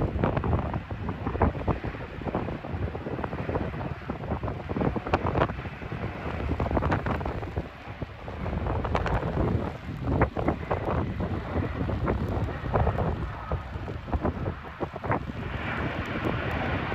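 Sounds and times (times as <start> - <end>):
wind buffeting microphone: 0.0 - 16.9.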